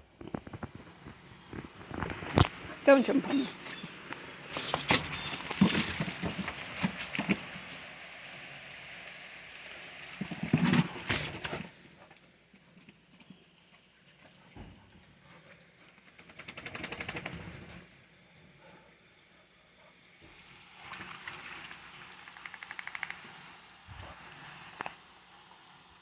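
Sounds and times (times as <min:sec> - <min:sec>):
dogs pattering and scuffling: 0:00.2 - 0:07.8.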